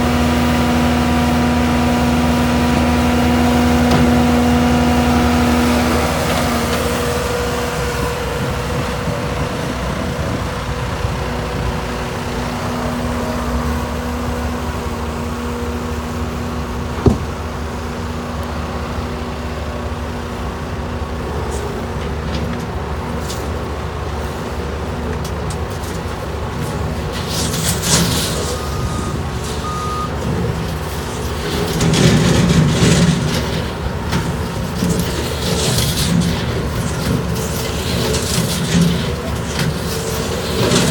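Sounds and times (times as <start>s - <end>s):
diesel engine running: 0.0s - 40.9s
sharp knock: 17.0s - 17.4s.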